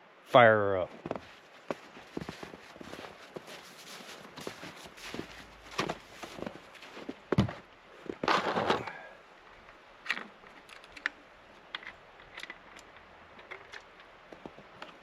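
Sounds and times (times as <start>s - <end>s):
scraping rustle: 1.0s - 9.0s.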